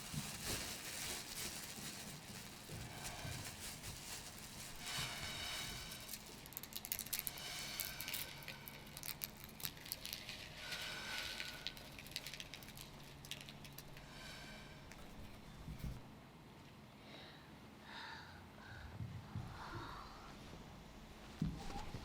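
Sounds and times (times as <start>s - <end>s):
small hard objects clicking and rattling: 0.0s - 15.4s.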